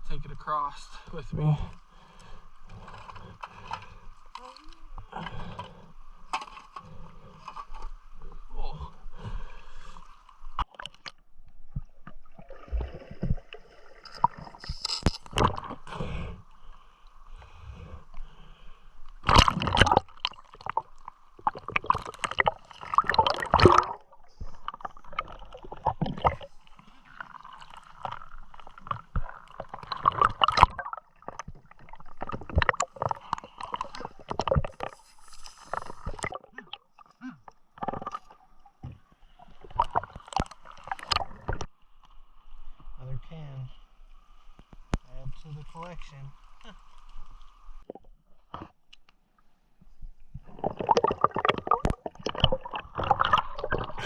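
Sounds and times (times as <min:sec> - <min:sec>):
river water sloshing and gurgling: 0:01.8 - 0:15.9, 0:19.2 - 0:43.0, 0:50.4 - 0:54.0
sharp water splashes: 0:19.2 - 0:24.2.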